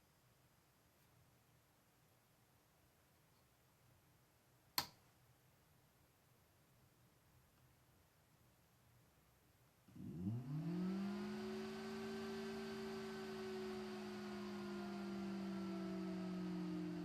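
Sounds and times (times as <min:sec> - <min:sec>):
cpu cooler fan hum: 0:09.9 - 0:17.0.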